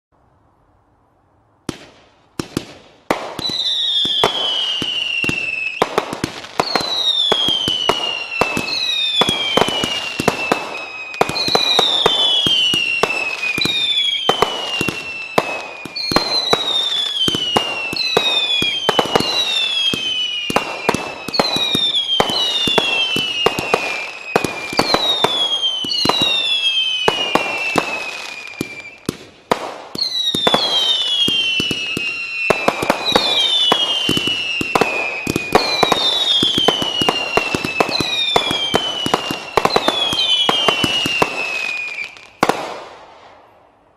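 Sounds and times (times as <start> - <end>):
firework cracks and bangs: 1.6 - 43.5
firework bangs: 1.6 - 43.6
falling firework whistles: 3.1 - 43.4.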